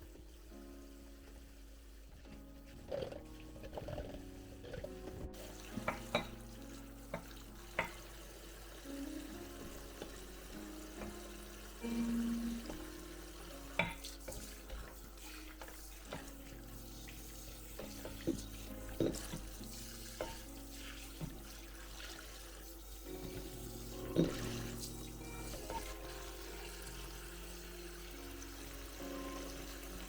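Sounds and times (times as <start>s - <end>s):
soft background music: 0.0s - 30.0s
water running at a sink: 0.0s - 30.0s
dishes knocking: 5.8s - 6.4s, 19.0s - 19.4s, 24.1s - 24.6s.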